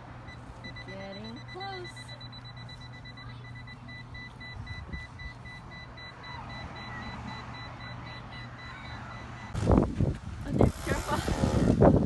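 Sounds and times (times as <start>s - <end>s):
high electronic beep tone: 0.3s - 9.6s.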